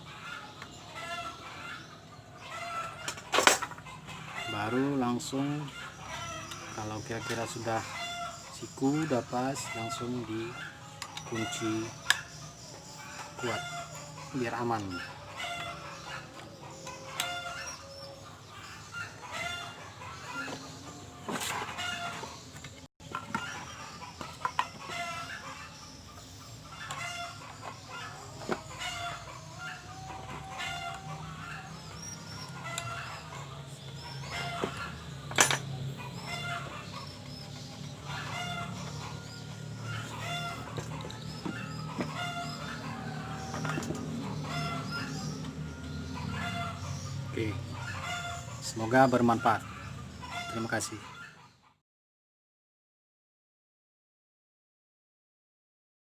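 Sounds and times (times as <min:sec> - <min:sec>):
chickens clucking: 0:00.0 - 0:51.8
rooster crowing: 0:26.8 - 0:37.0, 0:37.6 - 0:50.9.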